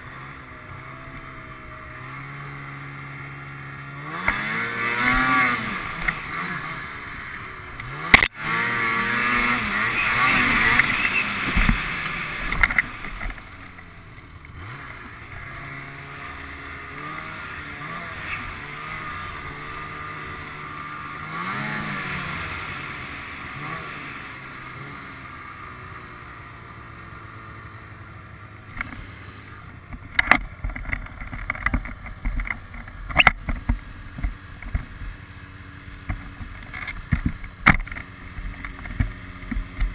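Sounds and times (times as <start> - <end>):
snowmobile engine revving: 0.0 - 31.4.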